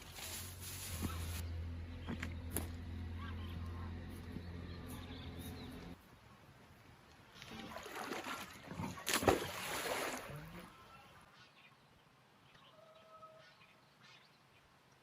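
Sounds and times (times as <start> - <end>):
water sloshing and splashing: 7.3 - 10.5.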